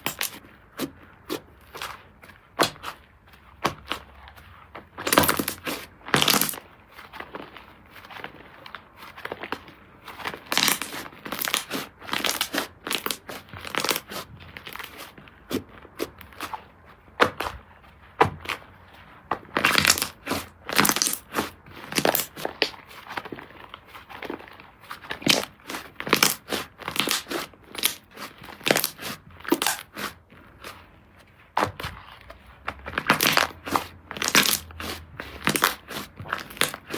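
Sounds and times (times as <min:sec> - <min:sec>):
slime squishing and popping: 0:00.0 - 0:02.0, 0:04.9 - 0:06.6, 0:10.3 - 0:16.6, 0:19.3 - 0:22.8, 0:25.1 - 0:30.7, 0:31.5 - 0:36.9.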